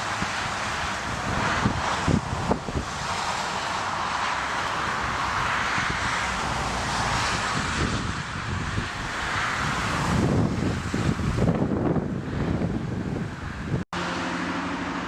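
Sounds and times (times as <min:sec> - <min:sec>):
wind buffeting microphone: 0:00.0 - 0:13.9
aircraft engines rushing: 0:00.0 - 0:15.0.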